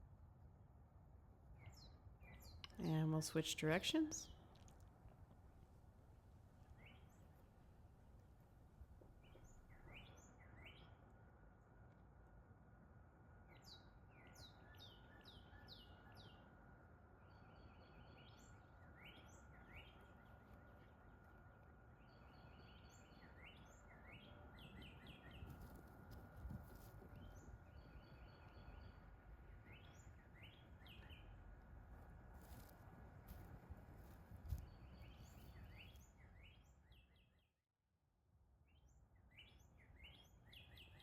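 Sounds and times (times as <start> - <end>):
faint steady high hum: 0.0 - 37.0
low rumble of wind: 0.0 - 37.2
songbirds singing: 1.6 - 4.7, 6.5 - 7.8, 9.0 - 11.2, 13.4 - 32.6, 34.0 - 37.5, 38.7 - 41.0
faint clicks: 2.6 - 2.8.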